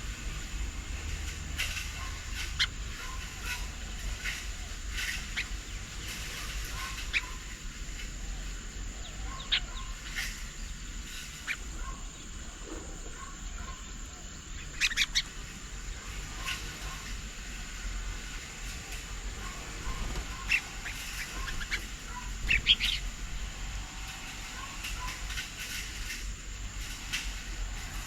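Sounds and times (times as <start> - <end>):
soft repeated bird notes: 0.0 - 17.4, 18.6 - 23.7
short sharp bird calls: 19.4 - 23.2.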